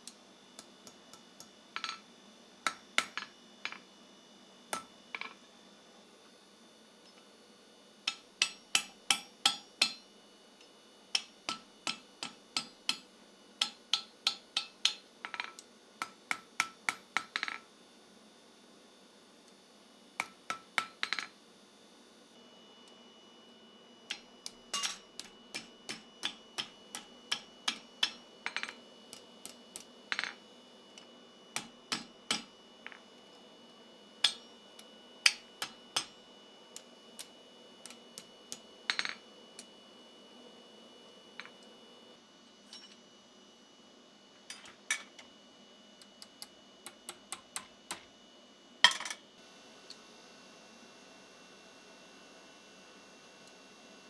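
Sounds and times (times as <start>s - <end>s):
hammer striking steel on anvil: 8.1s - 10.0s, 11.2s - 13.0s, 13.6s - 17.6s, 24.1s - 30.4s, 31.6s - 33.0s, 34.2s - 34.5s, 35.3s - 36.2s.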